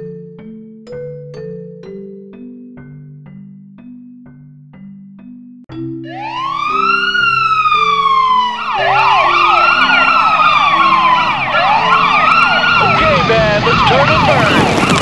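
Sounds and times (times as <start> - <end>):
low steady tune notes: 0.0 - 12.8
electronic siren wailing and yelping: 6.0 - 15.0.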